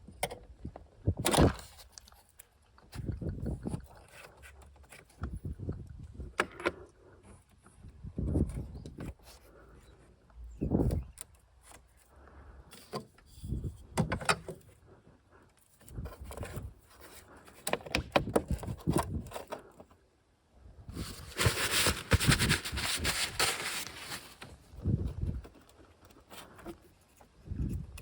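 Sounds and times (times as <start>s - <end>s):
dense rustling crackling: 20.9s - 26.6s.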